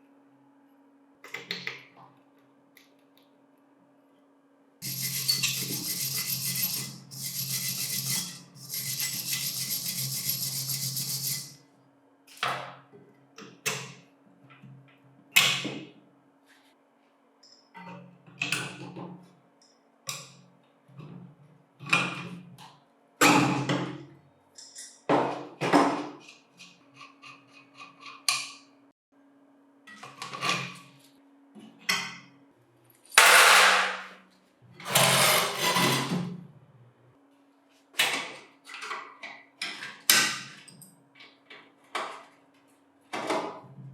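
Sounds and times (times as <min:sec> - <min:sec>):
metal clanks and scrapes: 0:04.8 - 0:11.6, 0:33.1 - 0:34.2, 0:34.8 - 0:36.3
power tool running: 0:04.8 - 0:11.6.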